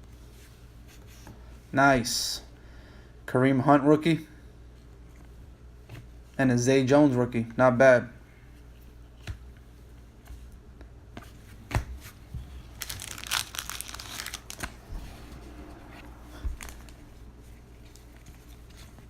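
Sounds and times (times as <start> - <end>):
plastic packaging crinkling: 12.6 - 14.9, 16.5 - 17.1.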